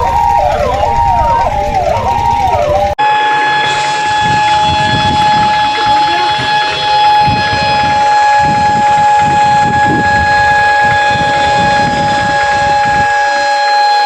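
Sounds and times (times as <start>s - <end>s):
emergency vehicle hooter tone: 0.0s - 14.0s
traffic noise: 0.0s - 14.0s.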